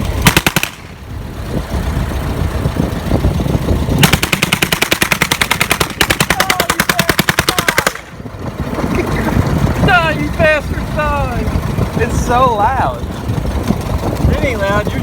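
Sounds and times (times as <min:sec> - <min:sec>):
vehicle engine running: 0:00.0 - 0:15.0
replica machine gun bursts: 0:04.0 - 0:08.1.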